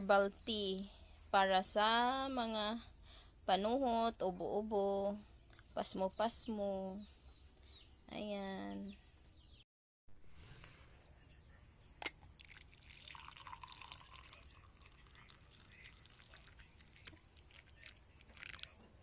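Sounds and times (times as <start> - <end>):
liquid pouring and dripping: 12.2 - 18.8.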